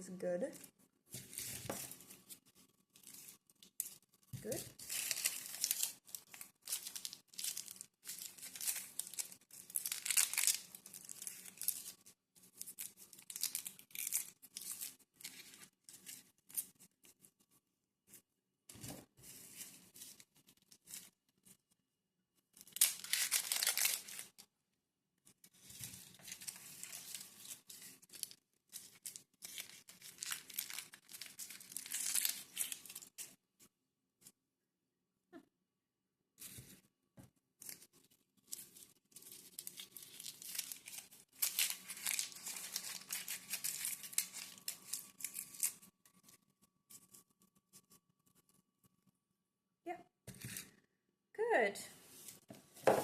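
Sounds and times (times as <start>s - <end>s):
plastic bags crinkling: 3.0s - 12.0s, 12.6s - 15.5s, 22.7s - 24.4s, 25.7s - 33.2s, 38.5s - 45.8s.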